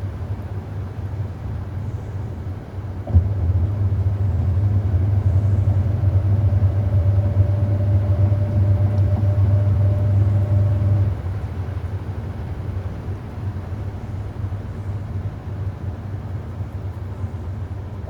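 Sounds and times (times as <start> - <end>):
washing machine motor click: 3.1 - 11.1
washing machine motor humming: 3.1 - 11.8.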